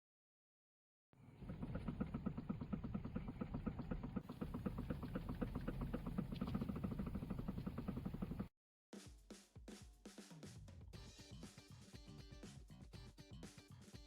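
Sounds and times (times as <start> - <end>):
low engine hum: 1.2 - 8.5
rapid knocking from steering column: 1.2 - 8.5.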